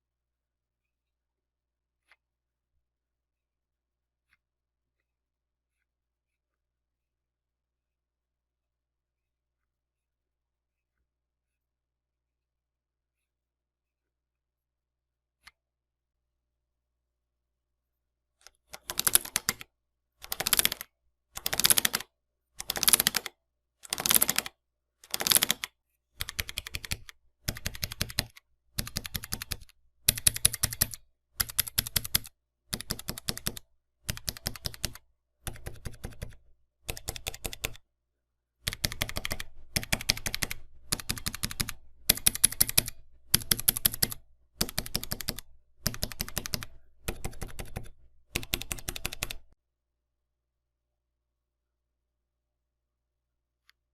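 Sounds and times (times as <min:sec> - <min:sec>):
mechanical keyboard typing: 0:18.4 - 0:37.8, 0:38.6 - 0:49.6.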